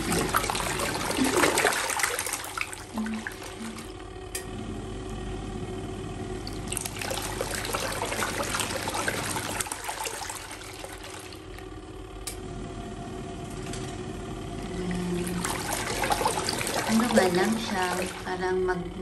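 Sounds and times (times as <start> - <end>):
water churning and splashing: 0.0 - 4.0, 6.4 - 11.6, 14.7 - 18.6
washing machine motor hum: 0.0 - 19.0.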